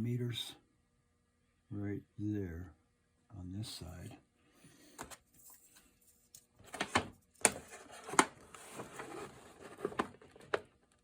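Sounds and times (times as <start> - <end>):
soft paper rustling: 7.4 - 10.6.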